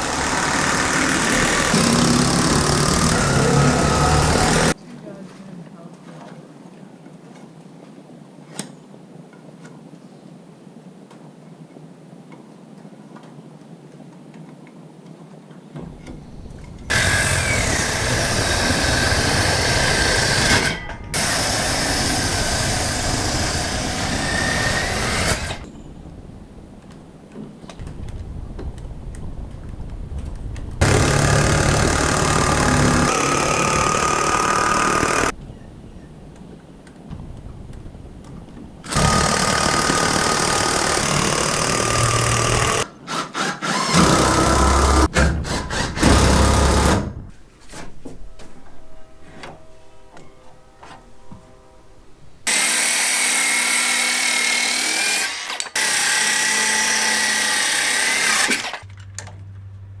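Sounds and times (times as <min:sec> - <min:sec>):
power tool running: 0:00.0 - 0:04.8, 0:16.9 - 0:25.7, 0:30.8 - 0:35.3, 0:38.9 - 0:47.2, 0:52.5 - 0:58.8.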